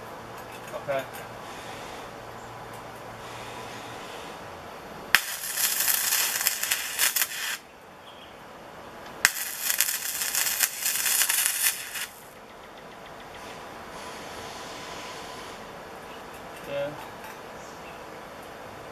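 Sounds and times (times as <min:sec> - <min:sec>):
welding arc crackling: 0:05.0 - 0:07.7, 0:09.2 - 0:12.4.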